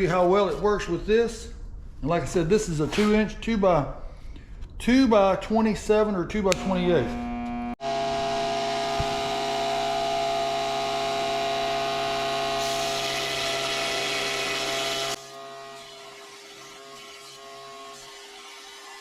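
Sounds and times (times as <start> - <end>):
motor hum: 6.5 - 15.2.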